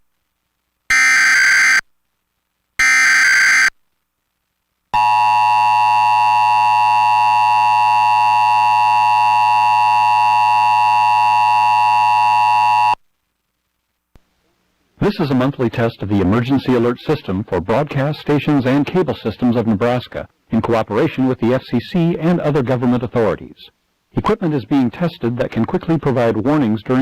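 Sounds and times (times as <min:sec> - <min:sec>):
short buzzing data bursts: 0:00.9 - 0:01.8, 0:02.8 - 0:03.7
two-tone attention signal: 0:00.9 - 0:01.8, 0:02.8 - 0:03.7.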